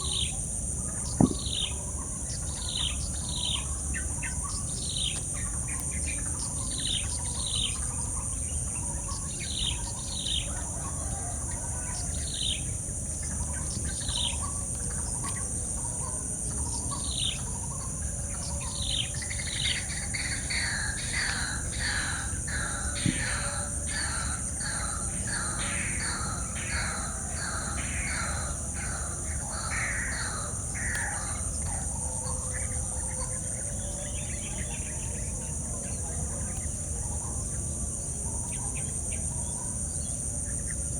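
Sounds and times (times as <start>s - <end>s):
birds calling falling whistles: 1.0s - 1.9s, 18.9s - 31.6s.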